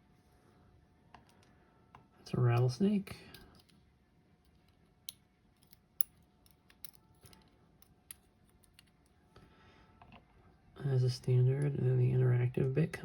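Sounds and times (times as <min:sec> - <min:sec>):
small pins and tools clicking: 0:04.5 - 0:09.2.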